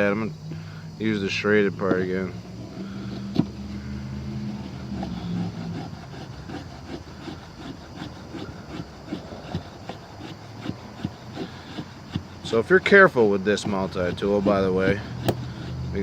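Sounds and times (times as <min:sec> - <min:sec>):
steady low hum: 0:00.0 - 0:16.0
knife blade sawing wood: 0:01.8 - 0:16.0
sharp knock: 0:15.2 - 0:15.5.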